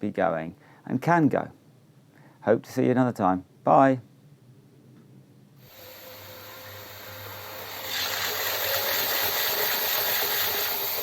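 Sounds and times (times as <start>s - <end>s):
model train rushing hiss: 5.6s - 11.0s.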